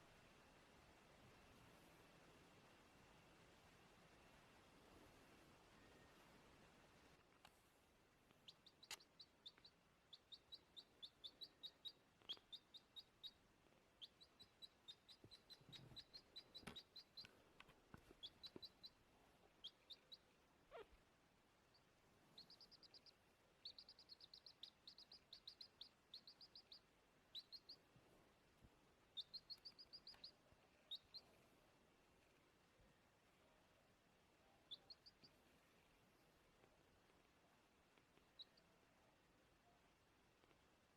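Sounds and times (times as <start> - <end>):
baby chick peeping: 8.3 - 40.9.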